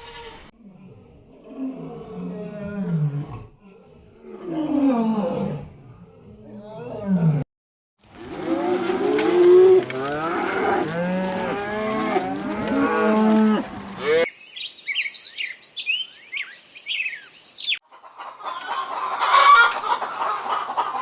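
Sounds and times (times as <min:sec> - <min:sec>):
cattle mooing: 0:08.2 - 0:14.3
herd of cows calling: 0:08.2 - 0:14.3.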